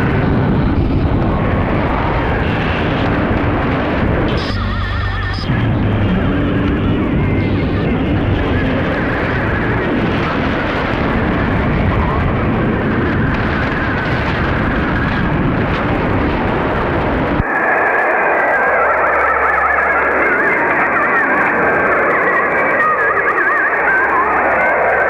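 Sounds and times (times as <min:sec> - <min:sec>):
harsh radio data signal: 0:00.0 - 0:15.4, 0:17.4 - 0:25.0
steady radio tones: 0:00.0 - 0:25.0.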